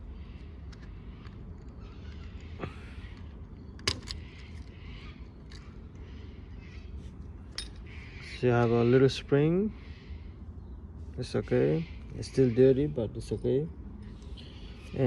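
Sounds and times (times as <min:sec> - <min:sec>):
small parts clicking and tapping: 0:00.4 - 0:05.7.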